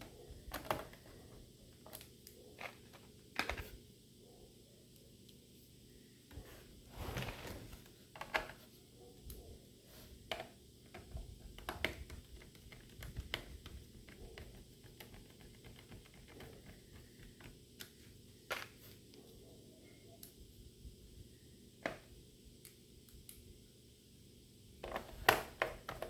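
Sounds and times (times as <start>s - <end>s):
short rustle: 6.9s - 7.9s.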